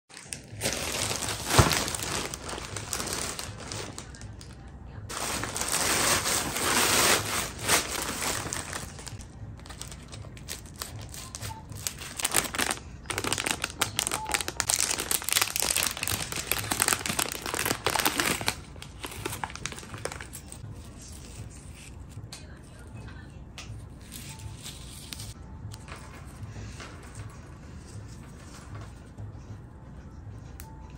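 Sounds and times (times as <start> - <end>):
packaging rustling and crinkling: 0.1 - 20.7.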